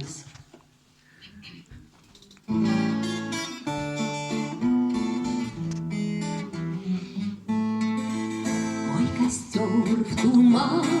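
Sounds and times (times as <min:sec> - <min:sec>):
acoustic guitar strumming waltz: 0:02.5 - 0:11.0.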